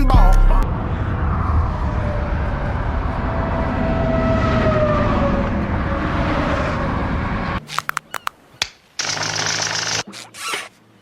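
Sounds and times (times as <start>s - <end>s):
vehicle passing by: 0.6s - 7.7s.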